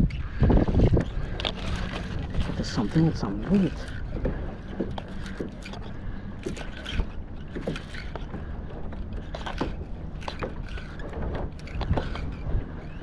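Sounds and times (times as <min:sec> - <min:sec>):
water lapping against kayak hull: 0:00.0 - 0:13.0
small knocks and clicks: 0:03.7 - 0:12.6.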